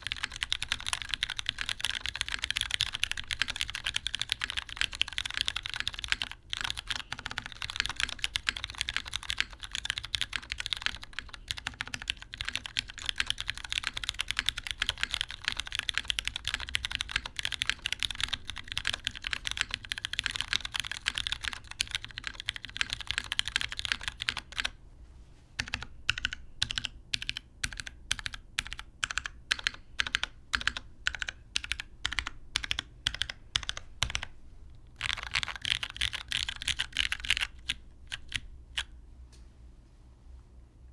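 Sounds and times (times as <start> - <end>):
mechanical keyboard typing: 0.0 - 24.8, 25.6 - 38.9.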